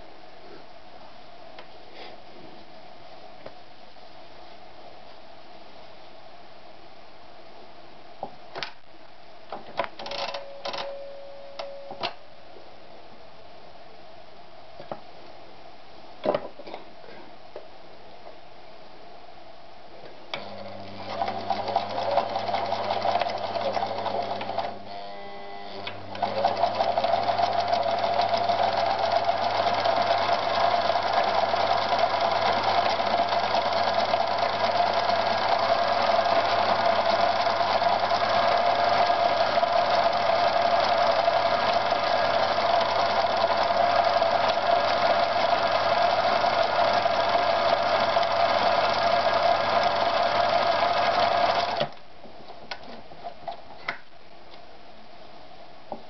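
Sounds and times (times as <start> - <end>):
sewing machine stitching denim: 20.3 - 51.9.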